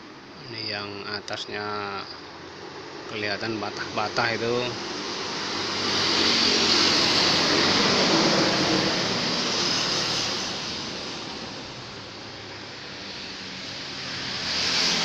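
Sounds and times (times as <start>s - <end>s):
vehicle driving past: 3.4s - 15.0s.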